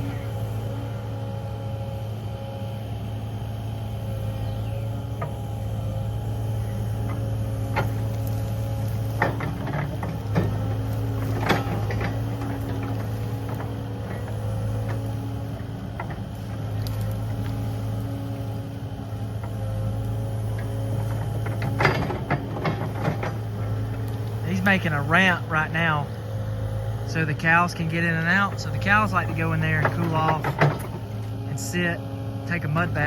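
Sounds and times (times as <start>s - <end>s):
excavator diesel engine running: 0.0s - 33.0s
excavator knocks: 7.0s - 17.7s, 20.5s - 25.5s, 28.4s - 31.4s.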